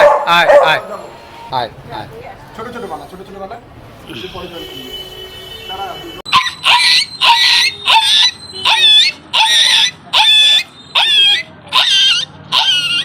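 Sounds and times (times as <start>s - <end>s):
high-pitched yelping cries: 6.3s - 13.0s.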